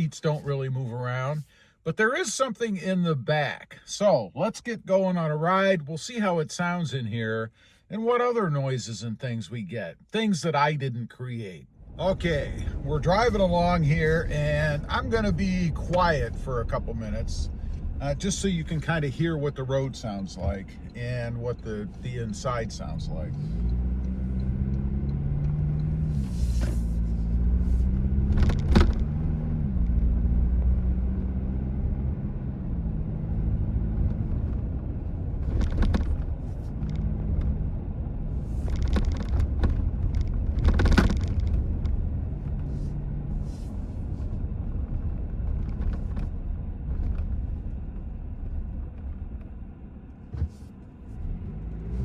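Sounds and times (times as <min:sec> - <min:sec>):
road and engine rumble in car cabin: 0:00.0 - 0:52.0
interior plastic rattling: 0:35.4 - 0:37.0, 0:38.6 - 0:41.9.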